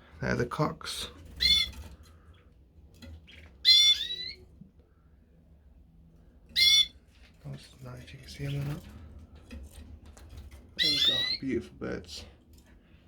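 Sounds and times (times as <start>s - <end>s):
canary calls: 1.3s - 1.8s, 3.3s - 4.5s, 6.5s - 7.0s, 10.8s - 11.5s.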